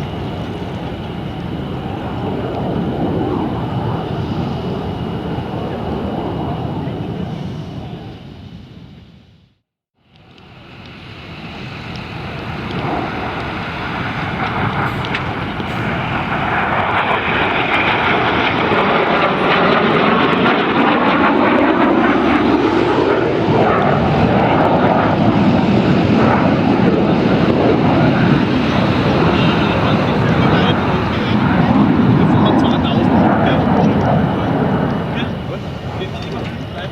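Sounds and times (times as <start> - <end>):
jet engines roaring: 0.0 - 9.5, 10.1 - 36.9.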